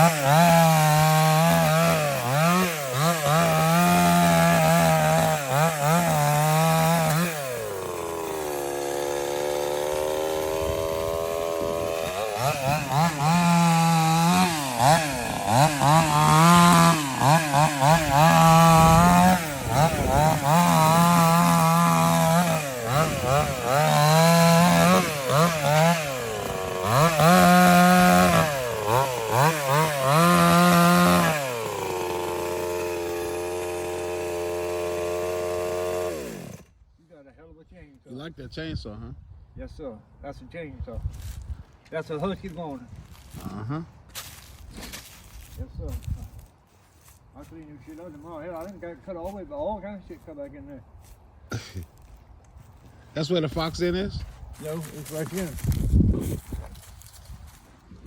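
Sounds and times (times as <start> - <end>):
chainsaw revving: 0.0 - 36.8.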